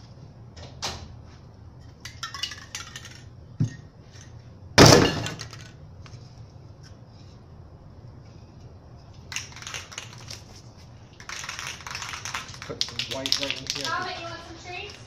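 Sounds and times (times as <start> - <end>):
hard objects clicking and clinking: 2.0 - 4.4
loud clattering crash: 4.8 - 5.7.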